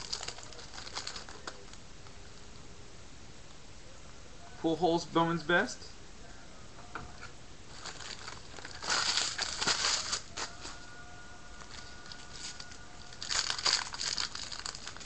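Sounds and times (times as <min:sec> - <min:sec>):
card wrappers crinkling: 0:00.0 - 0:01.8, 0:07.7 - 0:10.9, 0:11.6 - 0:15.0.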